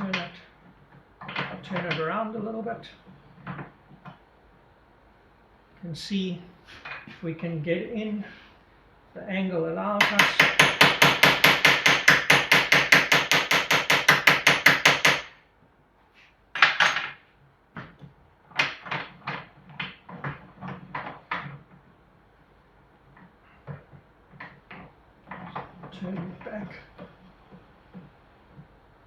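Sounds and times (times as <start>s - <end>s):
hammer tapping on a punch: 10.0s - 15.3s.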